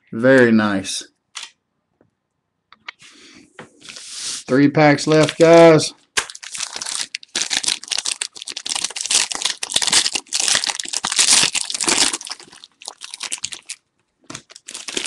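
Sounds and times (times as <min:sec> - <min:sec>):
card pack wrapper crinkling: 0:05.0 - 0:15.0.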